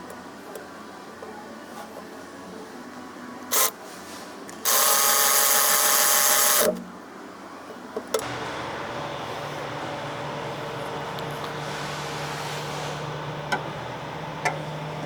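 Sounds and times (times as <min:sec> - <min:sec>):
low hum: 0:08.2 - 0:15.0
power tool whine: 0:08.2 - 0:15.0.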